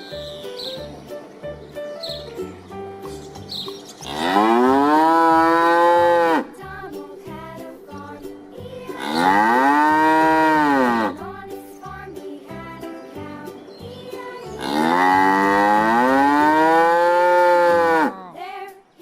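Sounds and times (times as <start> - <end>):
background music: 0.0 - 19.0
cow mooing: 4.1 - 6.5, 9.0 - 11.2, 14.6 - 18.4.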